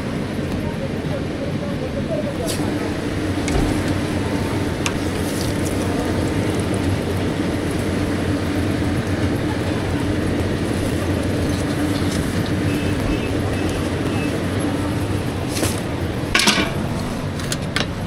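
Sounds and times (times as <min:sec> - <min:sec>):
constant rushing noise: 0:00.0 - 0:18.0
mechanical hum: 0:00.0 - 0:18.0.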